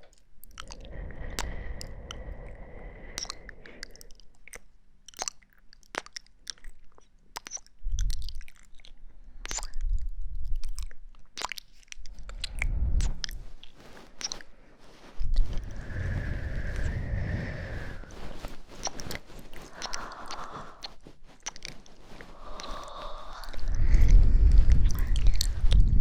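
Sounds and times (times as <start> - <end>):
crisp wet clicks and crackles: 0.0 - 2.3, 3.2 - 26.0
low rumbles: 12.0 - 14.2, 14.8 - 26.0.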